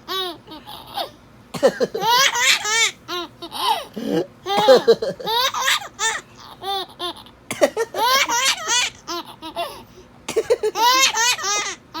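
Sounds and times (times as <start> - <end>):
baby laughing: 0.1 - 12.0
man fake coughing: 1.6 - 2.1, 4.0 - 5.3, 7.5 - 8.0, 10.3 - 10.8.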